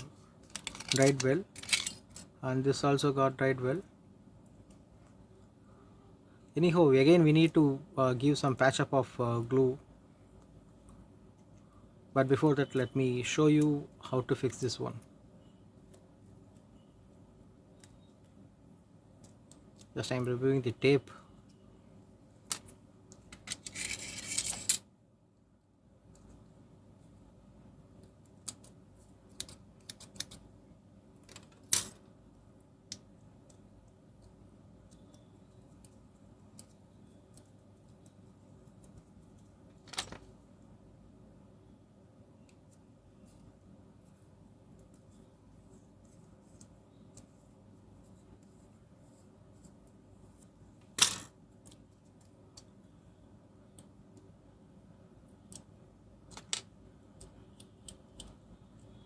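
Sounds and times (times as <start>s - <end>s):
light clicks of small parts: 0.4s - 2.3s, 19.2s - 20.4s, 27.9s - 30.5s, 32.8s - 40.3s, 42.4s - 43.6s, 45.9s - 48.6s, 49.6s - 52.8s, 53.7s - 54.4s, 55.2s - 59.0s
plastic pen parts clicking: 0.4s - 2.3s, 28.0s - 30.5s, 56.3s - 58.4s.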